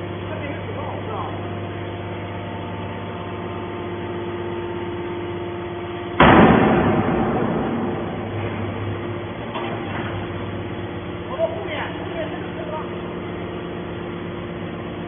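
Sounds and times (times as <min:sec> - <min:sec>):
can baler motor and pump hum: 0:00.0 - 0:15.0
loud burst of noise: 0:06.2 - 0:09.4.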